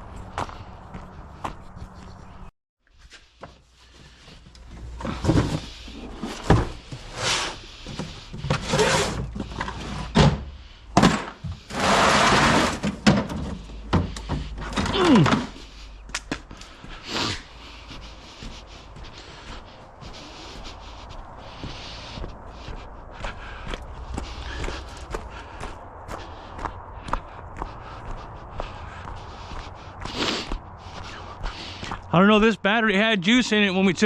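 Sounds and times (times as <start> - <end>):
thunks and knocks of objects moved: 4.2 - 16.4.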